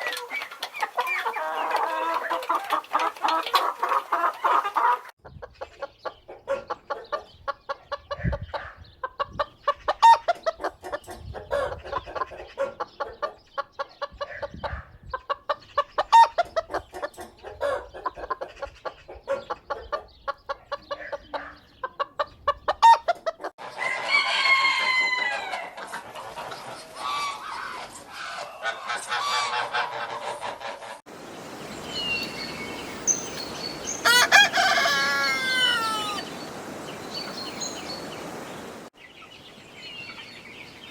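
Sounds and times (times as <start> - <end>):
hens clucking: 0.0 - 24.0, 24.8 - 31.0, 32.1 - 38.9
drawn-out bird call: 26.7 - 40.9.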